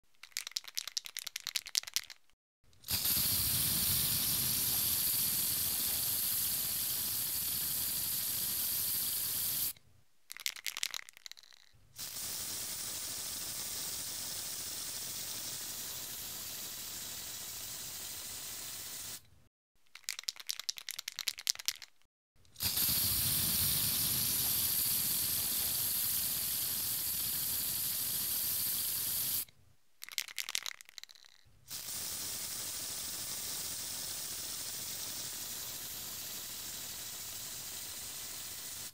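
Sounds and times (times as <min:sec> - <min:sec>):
spray can ball rattling: 0:00.1 - 0:19.3, 0:19.9 - 0:22.0, 0:22.6 - 0:38.9
spray paint hissing: 0:02.8 - 0:09.8, 0:12.0 - 0:19.3, 0:22.6 - 0:29.5, 0:31.7 - 0:38.9.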